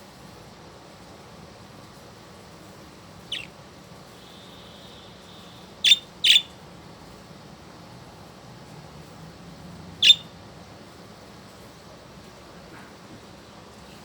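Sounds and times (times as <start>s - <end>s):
budgerigar chirps: 3.3s - 3.5s, 4.2s - 6.6s, 10.0s - 10.3s.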